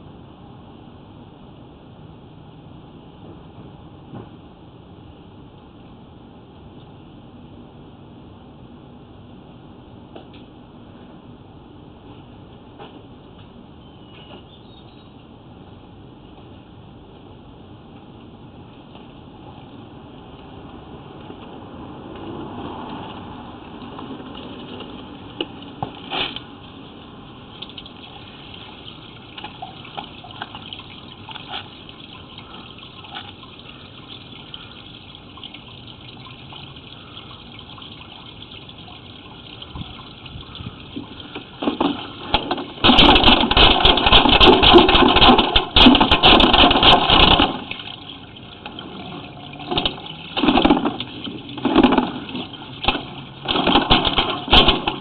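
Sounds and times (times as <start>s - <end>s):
low steady hiss: 0.0s - 55.0s
water rushing through sewer: 19.2s - 55.0s.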